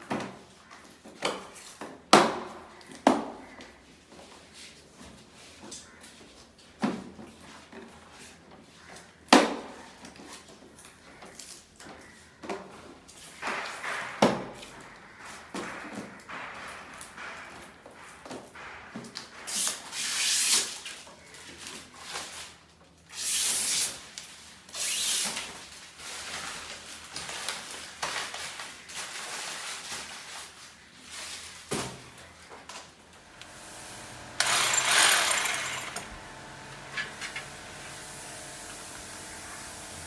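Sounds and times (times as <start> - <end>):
hissy scraping tool noise: 33.2 - 40.0
machine hum: 33.2 - 40.0.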